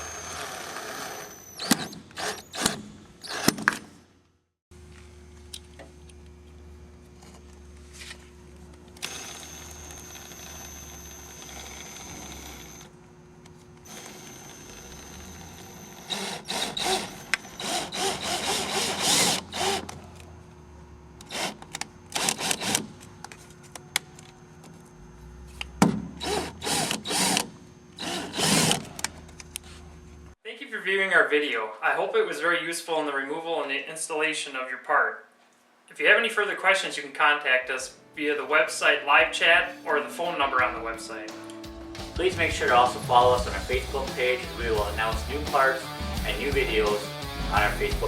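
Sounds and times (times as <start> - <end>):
power screw gun driving screws: 0.0 - 3.9, 9.0 - 12.9, 13.8 - 20.0, 21.2 - 23.0, 26.2 - 29.1.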